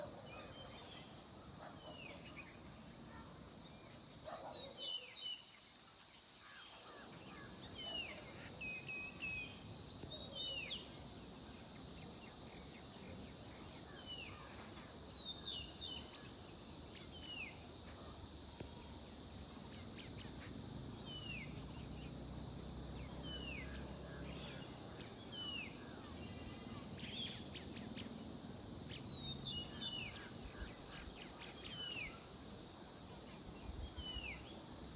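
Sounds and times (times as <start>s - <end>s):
insects droning: 0.0s - 34.9s.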